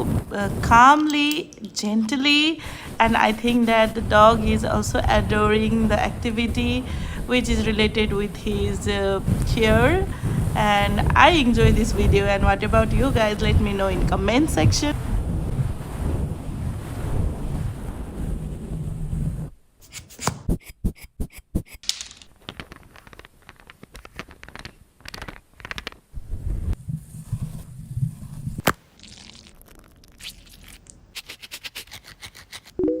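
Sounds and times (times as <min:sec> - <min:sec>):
grooming scraping and clicking strokes: 0:30.2 - 0:32.8.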